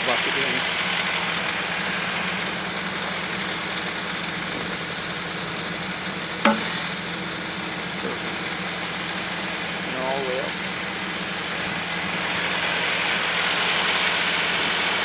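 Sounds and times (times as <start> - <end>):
tractor engine running: 0.0 - 15.0
sharp knock: 6.4 - 6.9.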